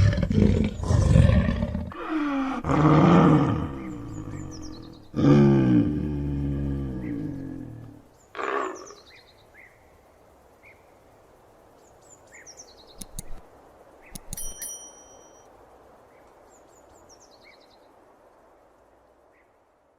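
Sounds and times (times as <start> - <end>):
leopard roar: 0.0 - 9.0
sharp clicks: 13.0 - 14.9
bird chirps: 14.0 - 15.4.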